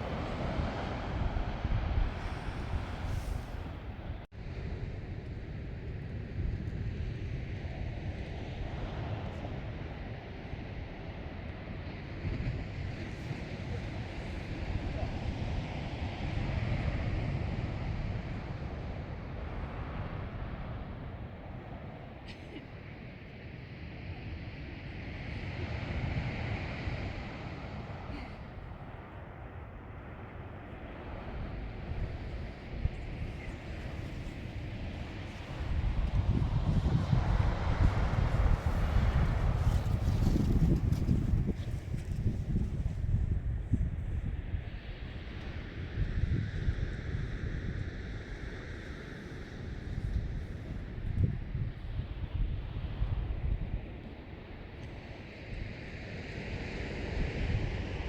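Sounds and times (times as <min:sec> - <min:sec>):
sea water rushing: 0:00.0 - 0:04.0
wind rumbling on microphone: 0:00.0 - 0:58.0.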